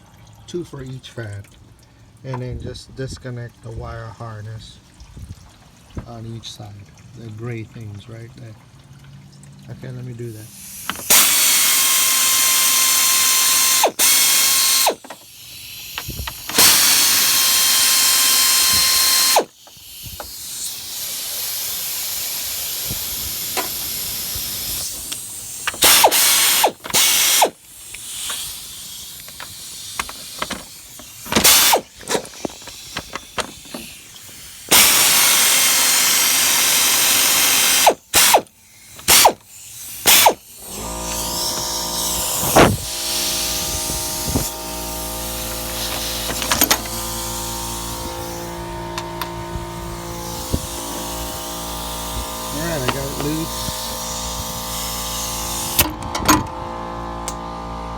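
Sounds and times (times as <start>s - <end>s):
cordless power tool whining: 10.4s - 57.9s
tool and parts clicking and knocking: 10.8s - 20.4s, 23.5s - 23.8s, 24.8s - 44.6s, 45.6s - 49.4s.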